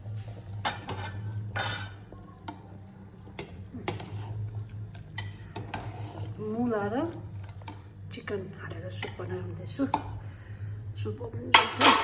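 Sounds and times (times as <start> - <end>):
ladle stirring soup: 0.0 - 10.3
steady low hum: 0.0 - 12.0.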